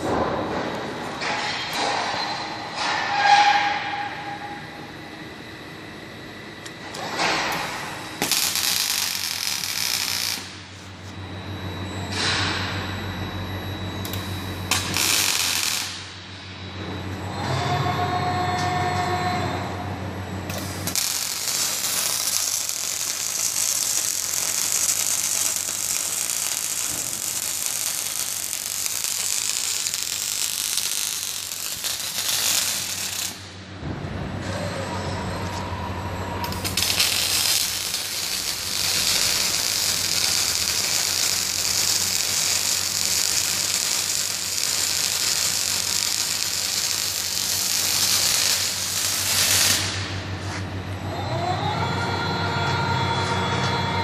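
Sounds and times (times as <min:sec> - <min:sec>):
low mechanical whir: 0:04.1 - 0:49.2
arc welding crackling hiss: 0:07.5 - 0:10.6, 0:14.1 - 0:16.1, 0:20.5 - 0:33.5, 0:36.5 - 0:50.0.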